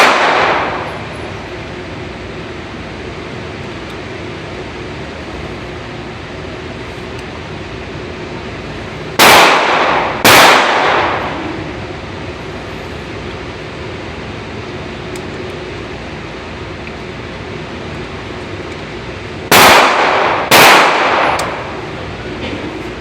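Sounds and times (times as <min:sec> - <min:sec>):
gunshots with echo: 0:00.0 - 0:00.9, 0:09.2 - 0:11.5, 0:19.5 - 0:21.8.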